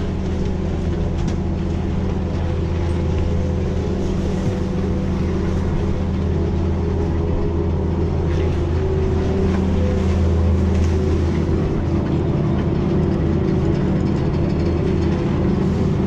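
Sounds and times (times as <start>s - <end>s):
chairlift machinery hum: 0.0s - 16.0s.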